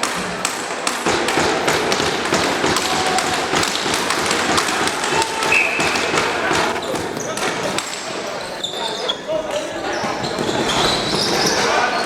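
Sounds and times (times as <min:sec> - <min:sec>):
hall background noise: 0:00.0 - 0:12.0.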